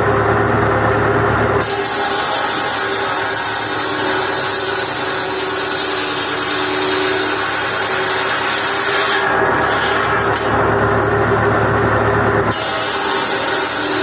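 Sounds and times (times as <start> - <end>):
tractor engine running: 0.0 - 1.6, 9.2 - 12.6
circular saw cutting wood: 1.6 - 10.8, 12.5 - 14.0.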